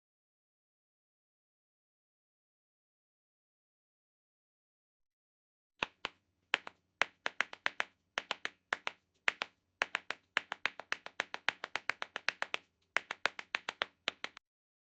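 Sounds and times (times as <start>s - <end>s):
tap shoes clicking on hard floor: 5.8s - 14.4s.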